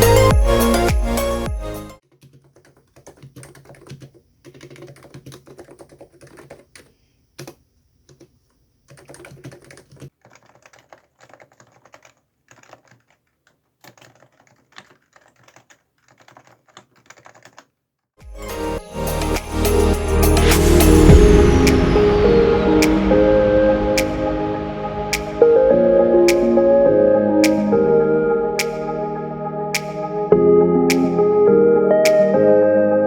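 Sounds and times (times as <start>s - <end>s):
background music: 0.0s - 2.0s, 18.2s - 33.0s
keyboard typing: 2.0s - 17.8s, 25.1s - 29.0s, 29.7s - 30.2s, 30.9s - 31.4s, 32.0s - 32.4s.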